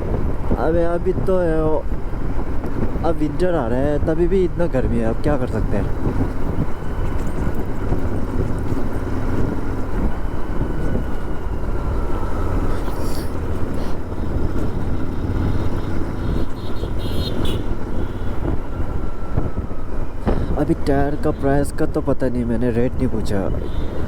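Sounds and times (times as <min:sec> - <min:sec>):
road and wind noise: 0:00.0 - 0:24.0
motorcycle engine running: 0:05.9 - 0:18.5.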